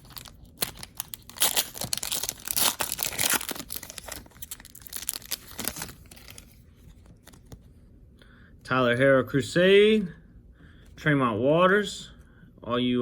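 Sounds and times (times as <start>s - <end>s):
wrapper tearing and crinkling: 0.0s - 6.6s.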